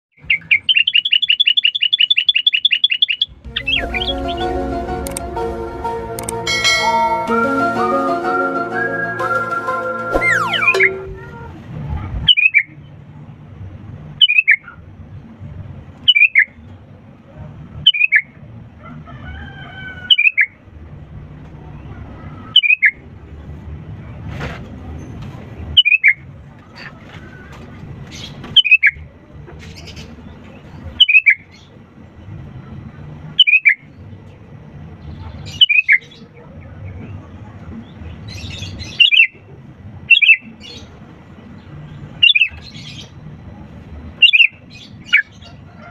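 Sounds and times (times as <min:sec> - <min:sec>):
low steady rumble: 0:03.2 - 0:22.4.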